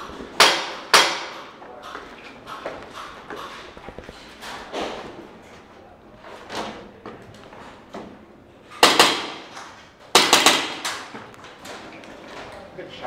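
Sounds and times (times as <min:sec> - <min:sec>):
airsoft guns firing: 0:00.4 - 0:01.5, 0:08.8 - 0:11.1.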